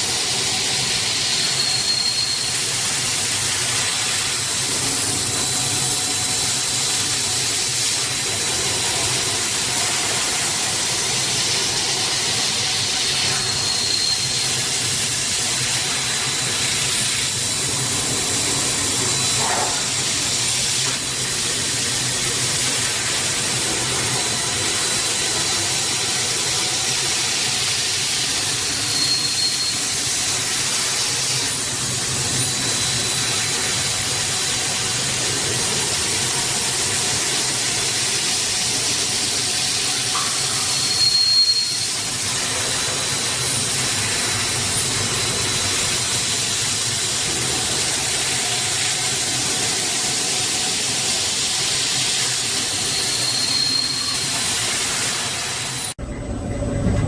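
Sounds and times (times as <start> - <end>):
machine hiss: 0.0 - 56.0
high-pitched whine: 52.4 - 57.0.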